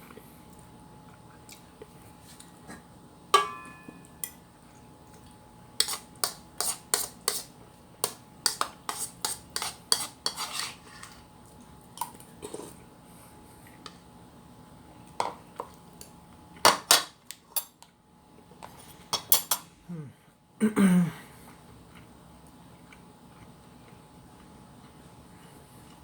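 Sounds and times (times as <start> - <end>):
cutlery clinking on a plate: 3.4 - 4.3, 19.1 - 19.7.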